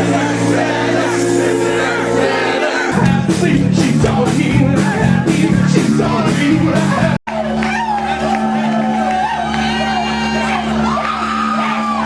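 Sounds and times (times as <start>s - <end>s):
driving drum beat: 0.0s - 7.2s
live band playing: 0.0s - 12.0s.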